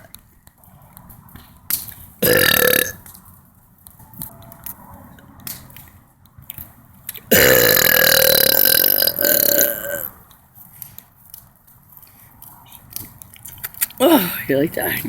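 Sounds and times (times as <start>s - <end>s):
long loud burp: 2.2s - 3.0s, 7.3s - 10.1s.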